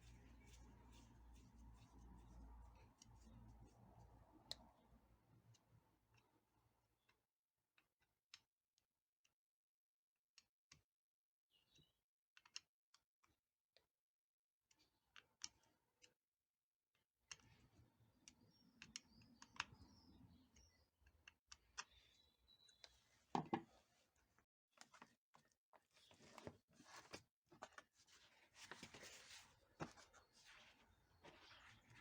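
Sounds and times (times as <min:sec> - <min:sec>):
light handling noises: 0:24.8 - 0:32.0.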